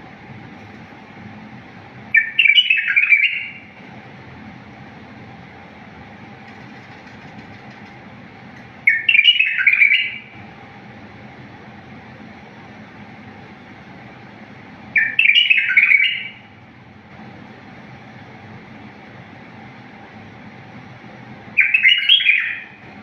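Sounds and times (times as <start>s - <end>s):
bulbul singing: 2.1s - 3.8s, 8.8s - 10.4s, 15.0s - 16.5s, 21.6s - 22.8s.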